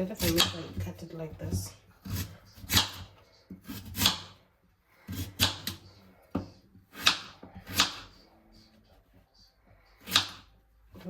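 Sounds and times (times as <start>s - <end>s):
knife striking chopping board: 0.2s - 0.8s, 2.1s - 4.4s, 7.0s - 8.1s.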